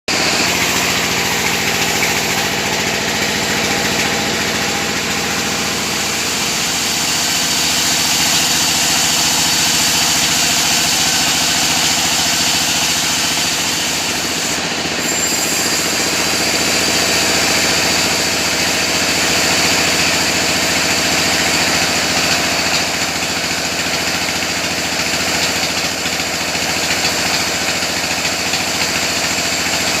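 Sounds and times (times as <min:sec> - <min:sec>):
chainsaw engine running: 0:00.1 - 0:30.0.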